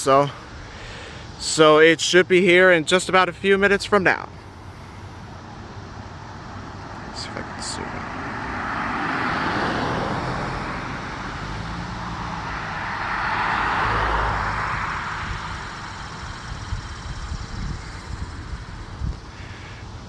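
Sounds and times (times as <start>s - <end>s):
cars passing: 0.0s - 20.0s.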